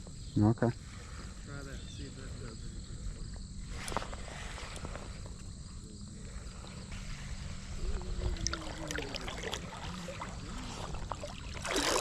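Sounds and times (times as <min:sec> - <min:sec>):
river water running: 0:06.5 - 0:12.0
wind on microphone: 0:07.4 - 0:09.0
light ticks and small splashes: 0:08.2 - 0:12.0.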